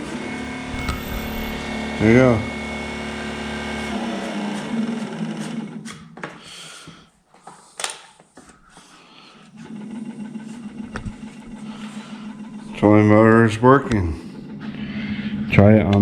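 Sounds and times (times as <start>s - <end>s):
electric motor humming: 0.5s - 2.2s.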